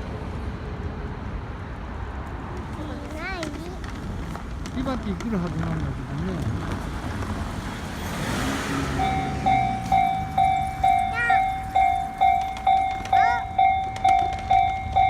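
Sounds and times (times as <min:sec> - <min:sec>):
vehicle passing: 0:05.6 - 0:15.0
railroad crossing bell clanging: 0:08.6 - 0:15.0.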